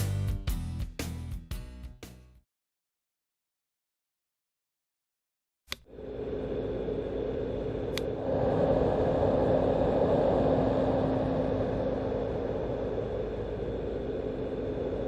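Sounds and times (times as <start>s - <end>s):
white noise machine: 5.7s - 15.0s.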